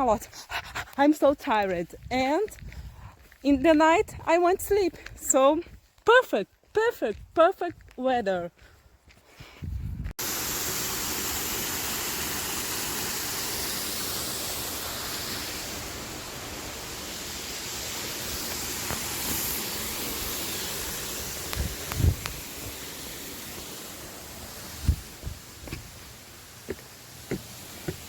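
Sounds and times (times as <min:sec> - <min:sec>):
waterfall rushing: 0:10.2 - 0:28.0.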